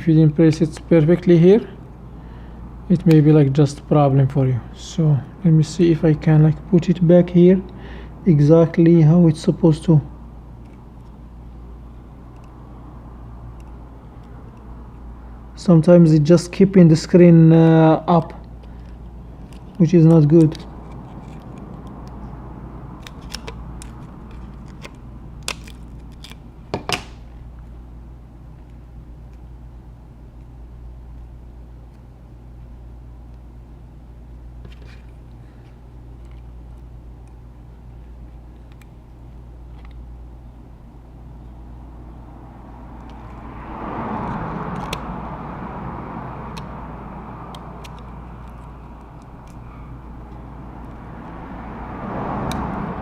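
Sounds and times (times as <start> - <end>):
steady low hum: 0.0 - 53.0
passing vehicle: 12.5 - 25.4, 41.6 - 53.0.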